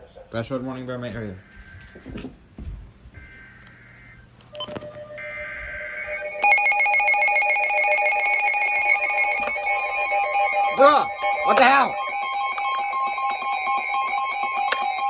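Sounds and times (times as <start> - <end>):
rapidly pulsing electronic alarm: 3.1 - 15.0
two-tone digital alert bursts: 4.6 - 15.0.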